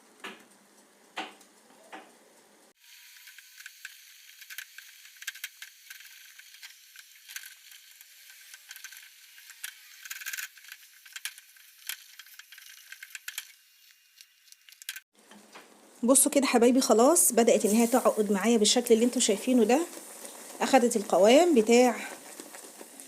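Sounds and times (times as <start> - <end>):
boiling syrup sizzling: 2.6 - 23.0
whisk scraping a pot: 17.6 - 23.0.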